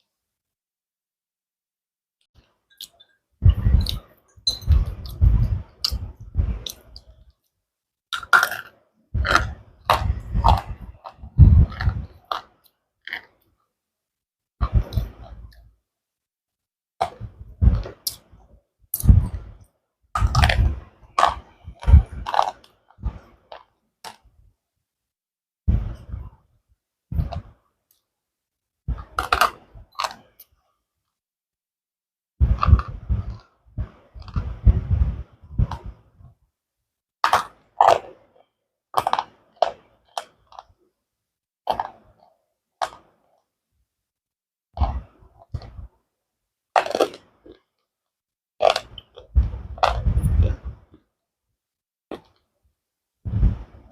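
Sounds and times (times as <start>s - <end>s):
slate pencils crunched by teeth: 8.2s - 12.5s, 38.9s - 40.7s, 46.8s - 47.6s, 48.6s - 50.4s
pencil crunching when chewed: 46.8s - 47.7s.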